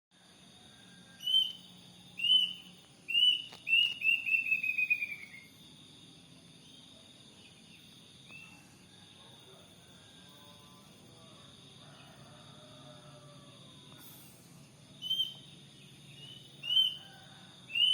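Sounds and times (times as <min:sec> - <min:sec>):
insects trilling: 0:00.2 - 0:17.9
cuckoo calling: 0:02.2 - 0:05.5, 0:16.2 - 0:17.9.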